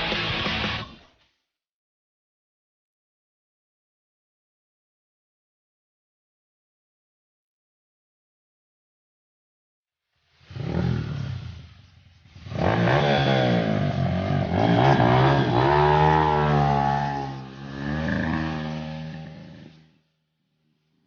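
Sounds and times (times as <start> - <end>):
dirt bike engine revving: 10.5 - 20.0.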